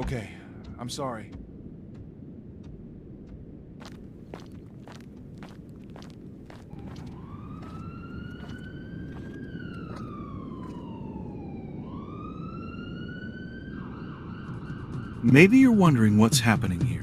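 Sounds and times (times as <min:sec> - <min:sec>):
low background rumble: 0:00.3 - 0:11.7
siren wailing: 0:05.4 - 0:15.5.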